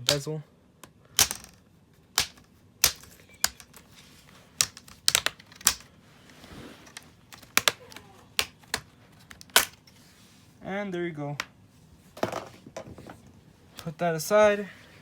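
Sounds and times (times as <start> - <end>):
plastic clips snapping loose: 0.8 - 3.8, 4.6 - 5.9, 6.9 - 9.8.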